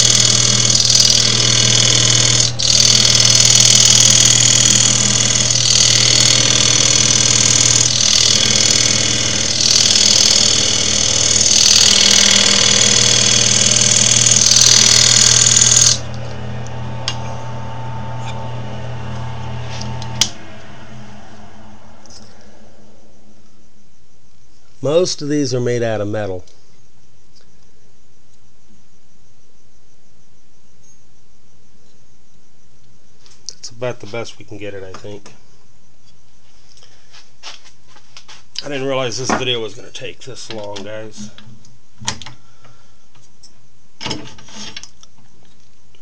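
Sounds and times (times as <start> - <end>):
lathe motor hum: 0.0 - 23.2.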